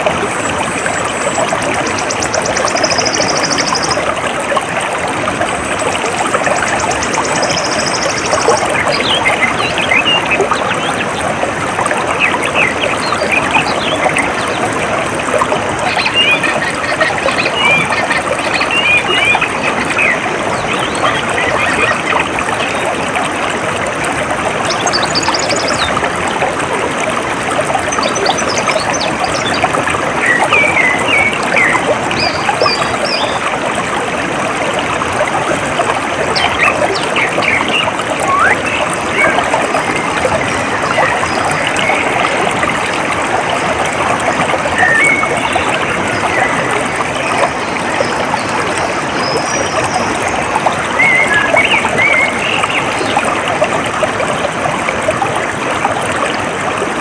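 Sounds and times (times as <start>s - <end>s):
stream water trickling: 0.0s - 57.0s
small birds chirping: 1.3s - 4.1s.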